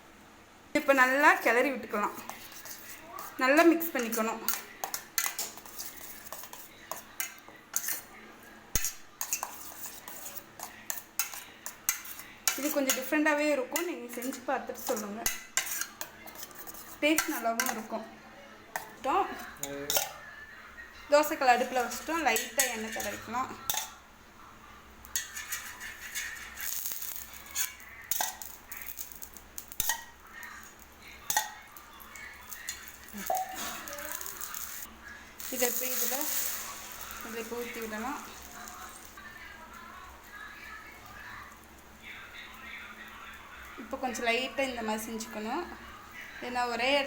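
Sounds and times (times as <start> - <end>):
utensil scraping griddle: 2.0 - 8.1, 8.8 - 13.2, 13.8 - 17.8, 21.4 - 23.8, 25.1 - 31.5, 32.1 - 39.3
spoon clinking in a bowl: 4.0 - 8.1, 8.8 - 13.1, 18.7 - 20.2, 21.6 - 24.0, 25.1 - 39.2.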